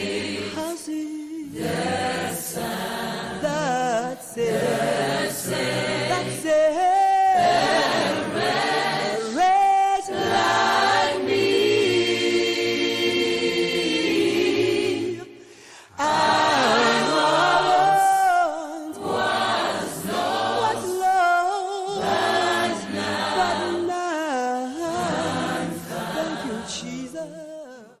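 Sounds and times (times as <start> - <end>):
unaccompanied choir singing: 0.0 - 27.3.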